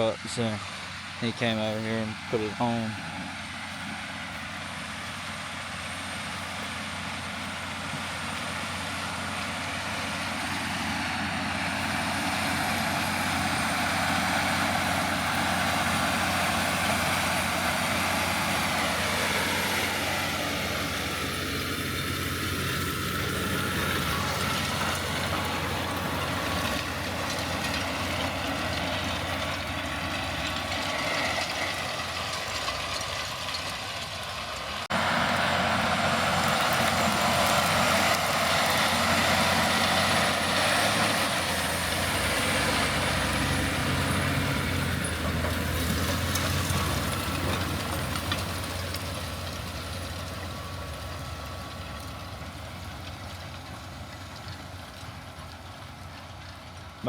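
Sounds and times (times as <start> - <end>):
cotton picker running: 1.3 - 32.7, 34.9 - 54.2.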